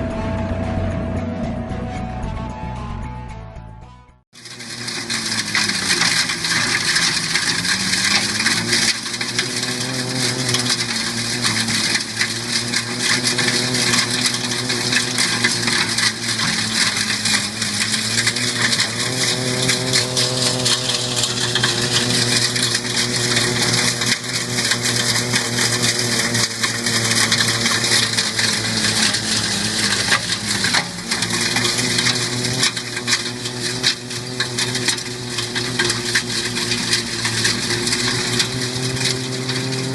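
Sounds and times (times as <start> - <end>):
construction machine engine: 0.0 - 3.3, 4.4 - 39.9
heavy rattling and crushing clatter: 4.4 - 39.9.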